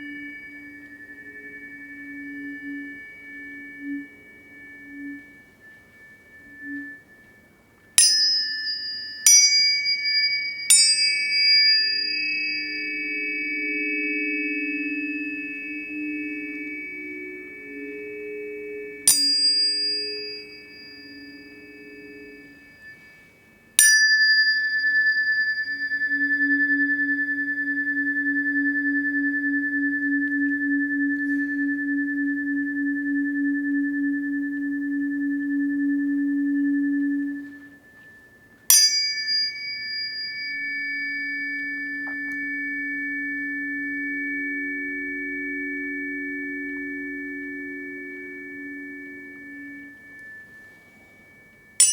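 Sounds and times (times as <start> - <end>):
low pulsing hum: 0.0 - 7.4, 26.1 - 38.3
tuning fork ringing: 0.0 - 51.9.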